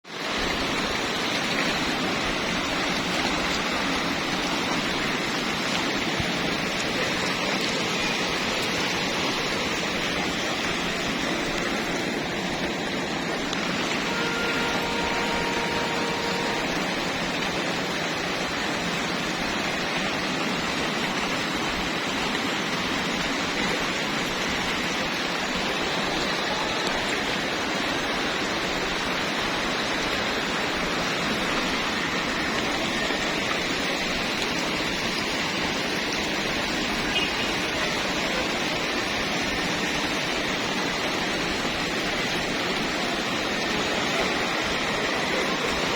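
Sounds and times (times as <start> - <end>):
sea waves washing: 0.0 - 45.9
faint brief tone: 14.0 - 16.8.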